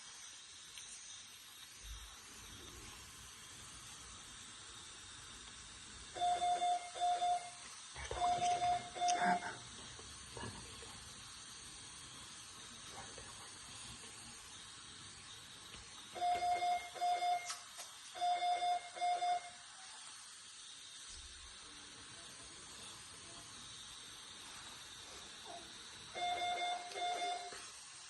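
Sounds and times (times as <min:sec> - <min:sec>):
steady hiss: 0:00.0 - 0:28.0
medical alarm high beeps: 0:06.2 - 0:07.6, 0:08.2 - 0:09.5, 0:16.2 - 0:17.6, 0:18.2 - 0:19.6, 0:26.2 - 0:27.6.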